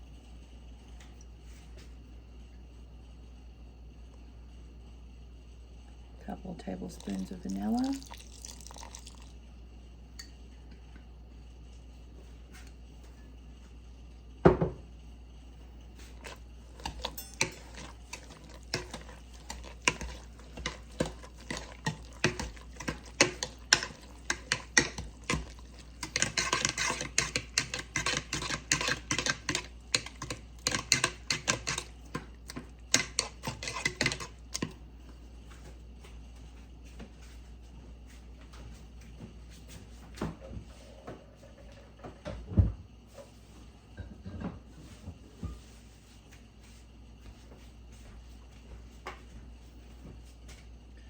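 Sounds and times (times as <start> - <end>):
utensil knocking and scraping bowl: 16.0 - 34.8.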